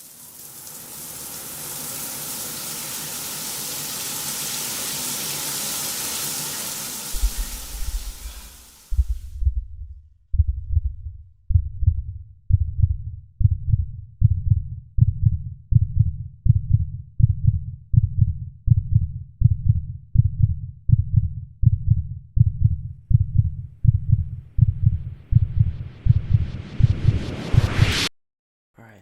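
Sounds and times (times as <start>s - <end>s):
muffled heartbeat: 7.2s - 8.3s, 8.9s - 28.0s.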